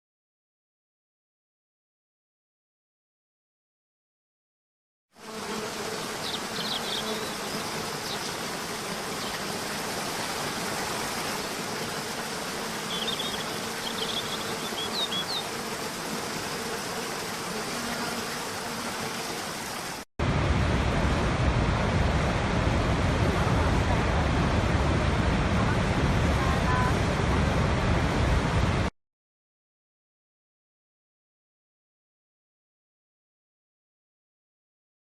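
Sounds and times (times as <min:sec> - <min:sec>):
deep water rush: 0:06.1 - 0:17.7, 0:18.5 - 0:28.9
falling water rushing: 0:06.1 - 0:28.9.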